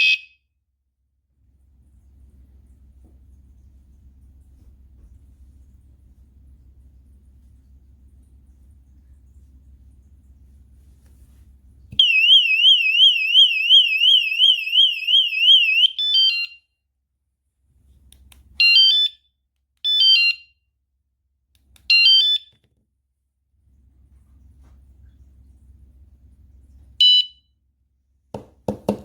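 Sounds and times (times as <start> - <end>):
bike alarm warbling siren: 0.0 - 0.3, 12.0 - 16.6.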